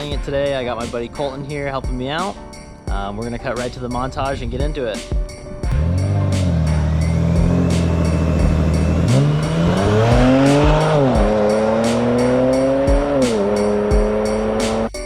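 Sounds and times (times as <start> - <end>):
music with a steady beat: 0.0 - 15.0
car engine revving: 5.7 - 14.9.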